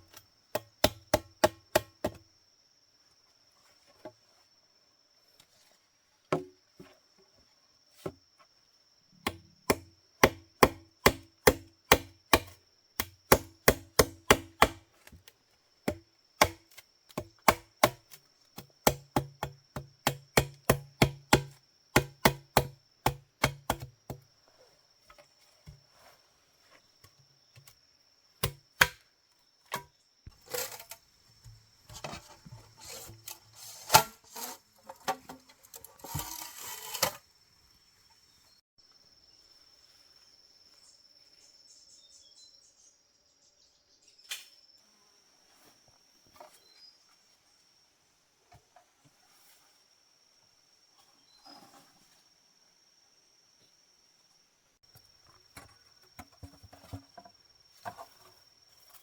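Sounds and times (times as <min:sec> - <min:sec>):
rapid chopping strikes: 0:09.3 - 0:14.8, 0:15.9 - 0:16.6, 0:17.2 - 0:18.0, 0:18.8 - 0:24.2.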